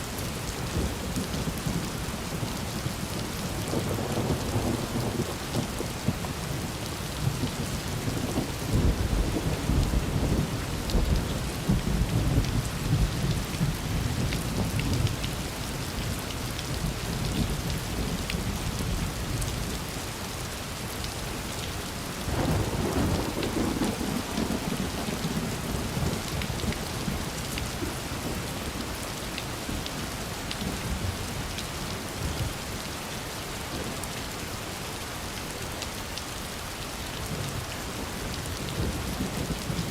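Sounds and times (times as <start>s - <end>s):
steady rain falling: 0.0s - 39.9s
thunder rumbling: 22.3s - 28.4s.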